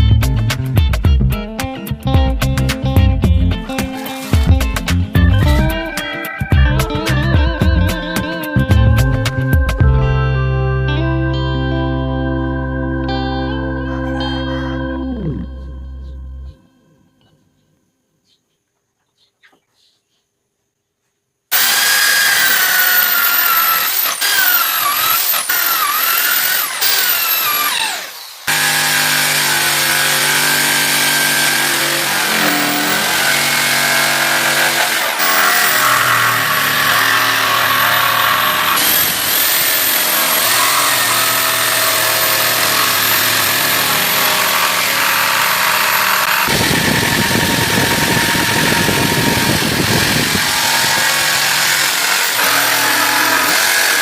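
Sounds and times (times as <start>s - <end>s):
high-pitched power tool: 21.5s - 54.0s
power tool running steadily: 21.5s - 54.0s.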